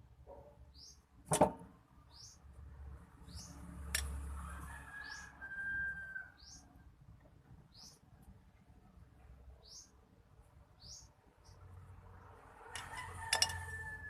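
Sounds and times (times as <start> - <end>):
small bird chirping: 0.7 - 1.1, 2.0 - 2.5, 3.2 - 4.2, 6.3 - 6.8, 7.7 - 8.3, 9.5 - 10.0, 10.7 - 11.7.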